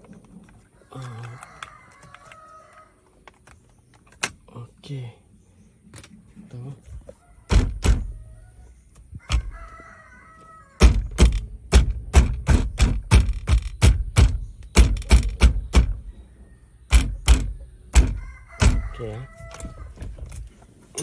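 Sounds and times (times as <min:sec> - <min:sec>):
sharp knocks on steering wheel: 0:10.8 - 0:16.0, 0:16.9 - 0:19.0.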